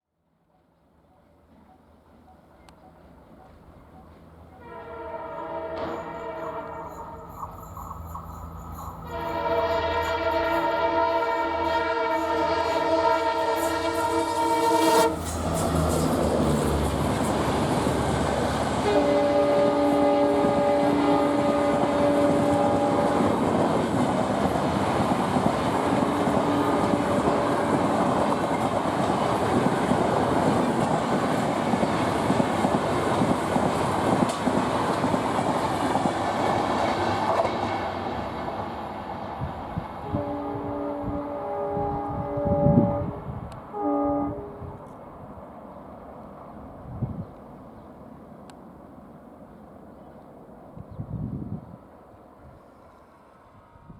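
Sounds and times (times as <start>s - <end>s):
locomotive horn blast: 4.5s - 7.6s, 9.0s - 23.6s, 25.8s - 28.3s, 40.0s - 44.9s
locomotive passing at speed: 5.3s - 43.6s.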